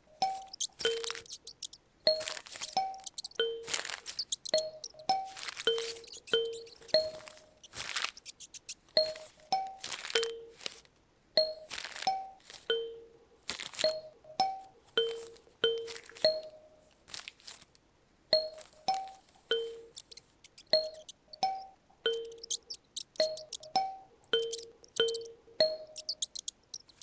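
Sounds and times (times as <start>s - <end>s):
paper rustling: 0.2s - 11.0s, 11.6s - 12.7s, 13.5s - 17.8s, 18.6s - 21.2s, 26.0s - 27.0s.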